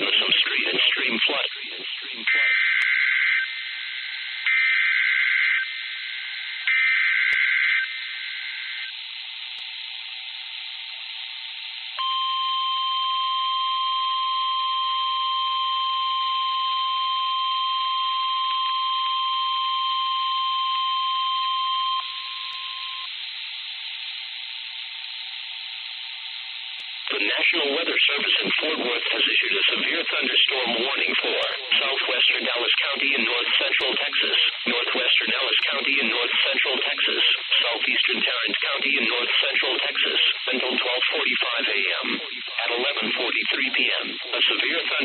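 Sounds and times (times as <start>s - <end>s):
radio hiss: 0.0s - 2.8s, 26.7s - 45.0s.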